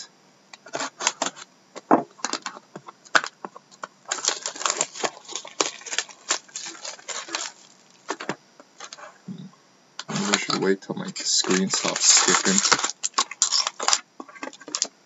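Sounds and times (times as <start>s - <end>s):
plastic shrink-wrap crackling: 2.2s - 9.0s, 11.2s - 14.9s.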